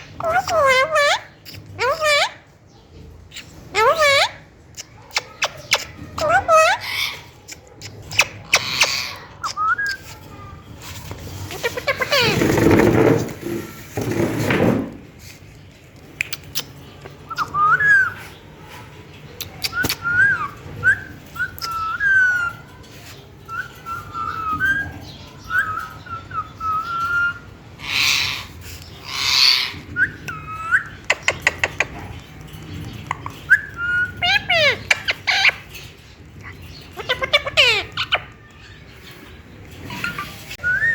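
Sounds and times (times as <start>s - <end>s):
parrot screeches: 5.1s - 7.4s, 8.1s - 12.7s, 25.5s - 30.7s.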